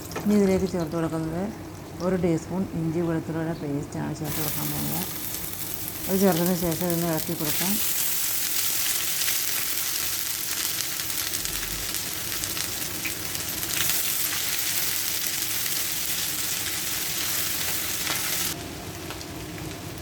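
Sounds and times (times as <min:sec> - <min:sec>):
food sizzling in hot oil: 0:04.2 - 0:20.0.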